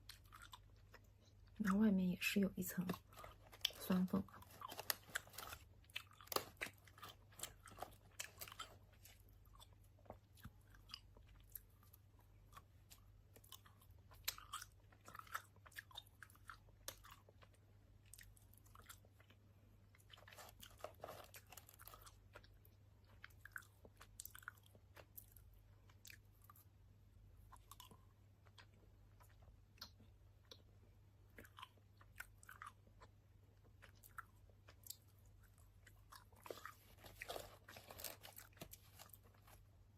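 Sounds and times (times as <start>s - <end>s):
chewing candy with lip-smacking: 0.0s - 39.9s.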